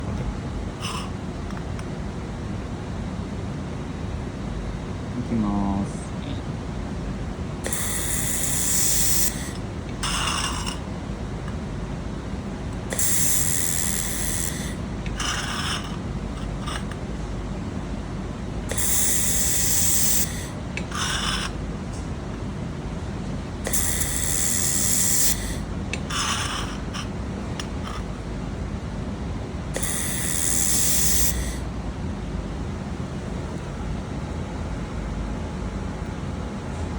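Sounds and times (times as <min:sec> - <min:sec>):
steady machine hum: 0:00.0 - 0:36.9
laser welder hissing: 0:07.6 - 0:10.7, 0:12.9 - 0:15.6, 0:18.7 - 0:21.4, 0:23.7 - 0:26.7, 0:29.8 - 0:31.6.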